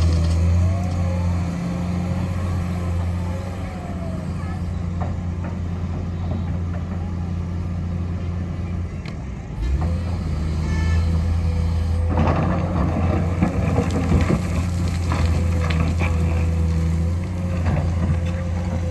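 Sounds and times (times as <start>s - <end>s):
rough scraping and clattering: 0.0s - 2.1s, 11.9s - 18.9s
loud diesel engine drone: 0.0s - 18.9s.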